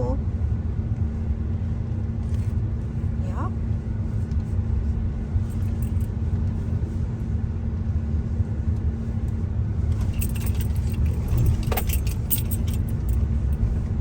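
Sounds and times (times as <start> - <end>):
car road and engine rumble: 0.0 - 14.0
light clicking and rattling: 9.9 - 13.7.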